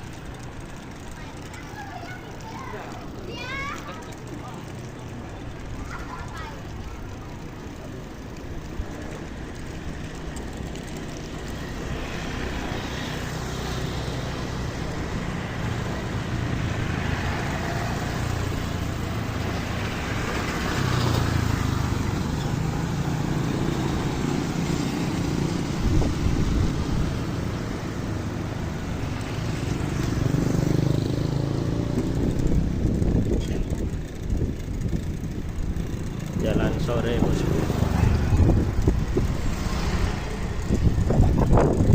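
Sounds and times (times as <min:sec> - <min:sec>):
road traffic passing: 0:00.0 - 0:41.9.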